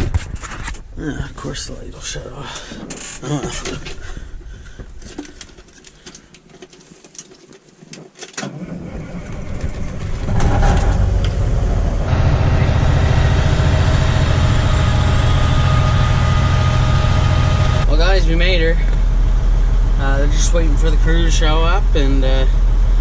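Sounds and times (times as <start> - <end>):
truck engine starting and running: 8.4 - 23.0.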